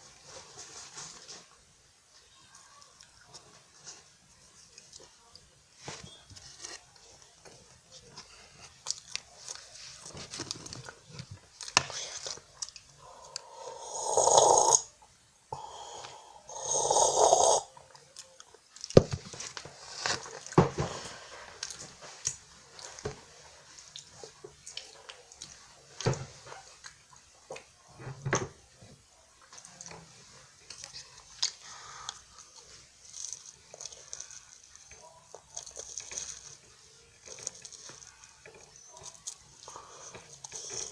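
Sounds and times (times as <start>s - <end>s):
biscuit crunching: 29.4s - 40.9s.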